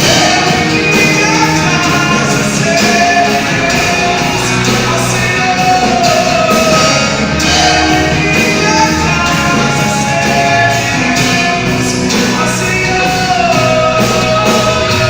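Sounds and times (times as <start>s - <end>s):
live rock band playing: 0.0s - 15.0s
person singing: 0.0s - 15.0s.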